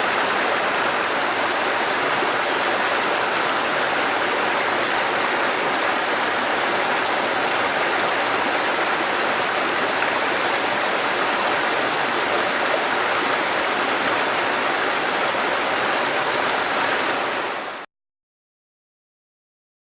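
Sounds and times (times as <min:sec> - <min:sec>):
river water rushing: 0:00.0 - 0:17.8.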